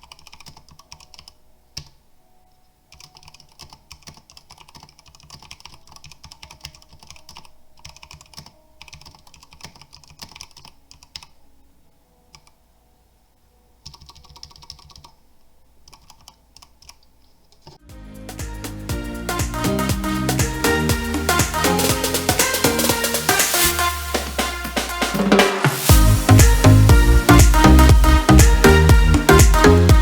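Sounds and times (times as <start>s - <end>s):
mechanical keyboard typing: 0.0s - 2.0s, 2.9s - 11.4s, 13.8s - 15.2s, 15.8s - 17.8s.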